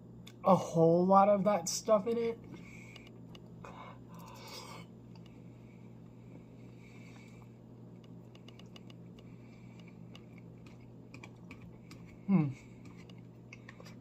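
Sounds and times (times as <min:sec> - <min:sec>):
steady low hum: 0:00.0 - 0:14.0
faint clicks and scrapes: 0:06.6 - 0:12.2, 0:12.8 - 0:14.0.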